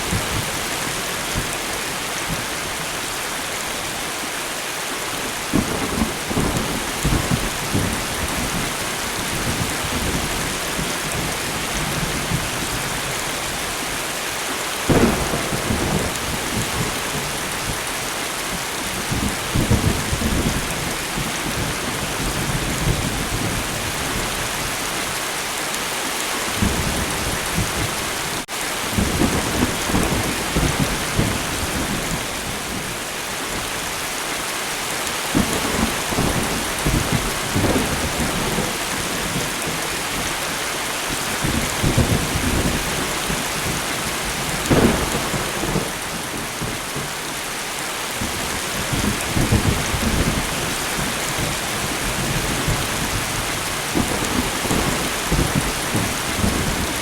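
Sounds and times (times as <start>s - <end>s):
steady rain: 0.0s - 57.0s
thunder rumbling: 14.9s - 24.3s, 41.1s - 47.1s, 48.2s - 57.0s.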